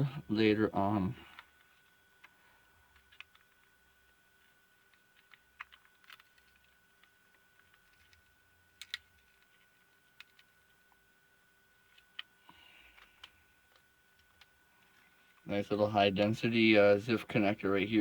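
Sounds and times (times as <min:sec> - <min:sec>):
small plastic and metal clicks: 0:04.9 - 0:10.6.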